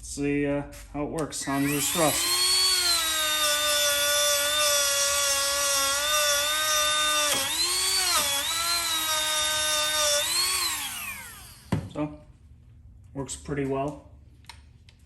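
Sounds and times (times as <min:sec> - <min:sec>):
rotary tool whining against metal: 0:01.4 - 0:11.8.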